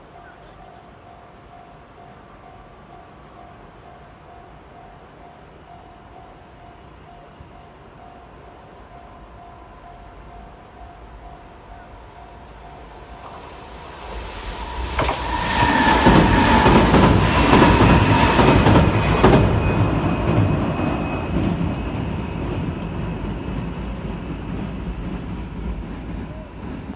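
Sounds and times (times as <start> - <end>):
train wheel squeal: 6.7 - 7.4, 11.7 - 26.9
wheels clacking over rail joints: 13.2 - 26.9.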